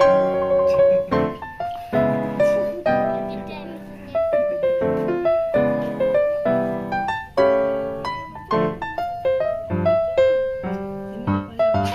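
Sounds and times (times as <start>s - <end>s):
piano music: 0.0s - 11.9s.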